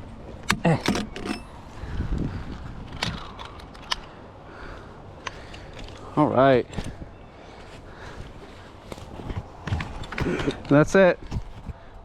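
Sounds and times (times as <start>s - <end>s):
rustle of handling: 5.4s - 11.8s.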